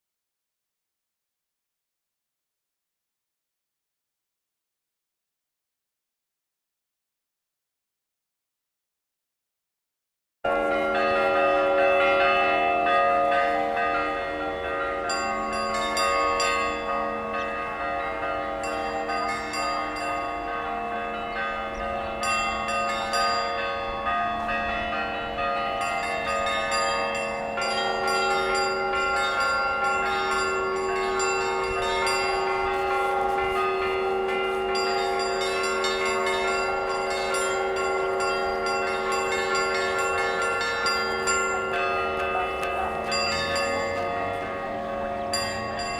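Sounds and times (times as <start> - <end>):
church clock bell ringing: 10.5 - 45.9.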